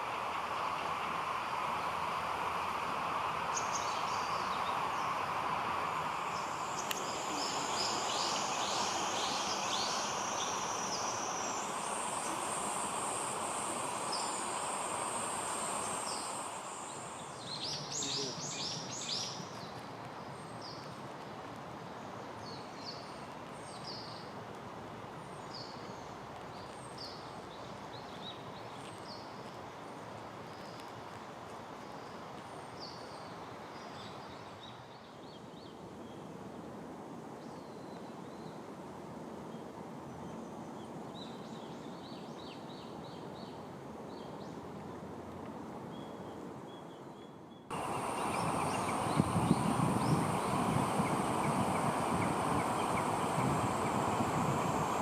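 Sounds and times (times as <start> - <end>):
high insect buzz: 0.0 - 19.3, 47.7 - 55.0
bird song: 3.5 - 5.2, 6.3 - 12.4, 15.8 - 21.0, 45.9 - 55.0
rushing background noise: 47.7 - 55.0.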